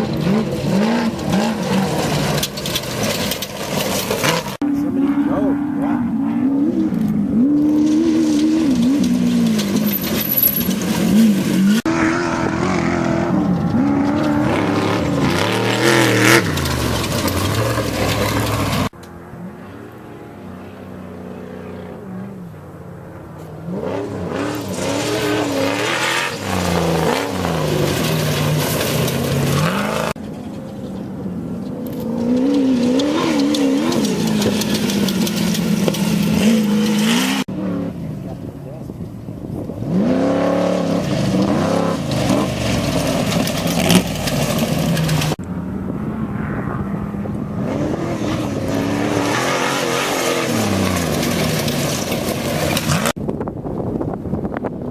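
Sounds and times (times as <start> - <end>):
race vehicle engines revving: 0.0 - 54.9.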